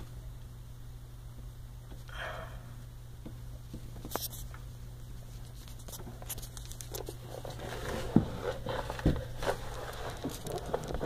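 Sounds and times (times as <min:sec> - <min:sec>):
steady low hum: 0:00.0 - 0:11.0
faint rustling: 0:04.0 - 0:11.0.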